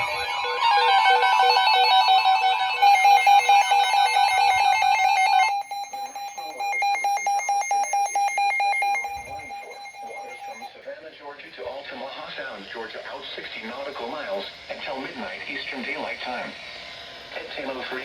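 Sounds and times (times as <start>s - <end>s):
steady high alert tone: 0.0s - 10.8s
rapid stepping electronic beeps: 2.8s - 10.7s.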